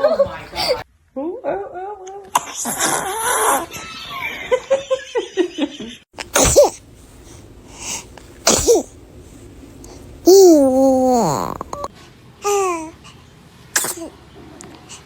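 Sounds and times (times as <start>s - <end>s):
baby sneezing: 6.3s - 6.8s, 8.4s - 8.9s, 13.8s - 14.2s.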